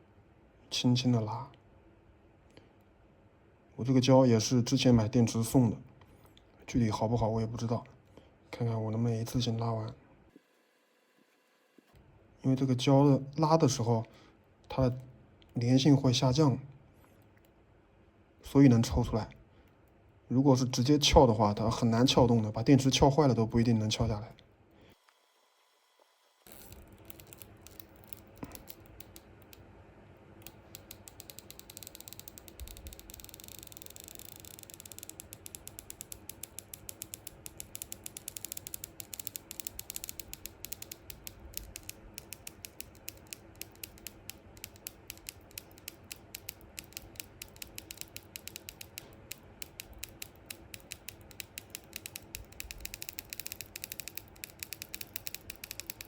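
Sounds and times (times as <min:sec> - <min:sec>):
adhesive tab creaking and clicking: 0:26.5 - 0:29.7, 0:30.4 - 0:56.0.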